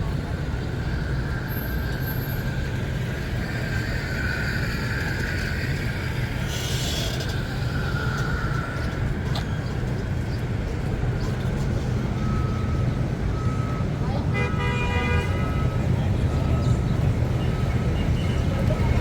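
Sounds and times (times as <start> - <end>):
high drawn-out squeal: 0.0 - 9.2
city traffic rumble: 0.0 - 19.0.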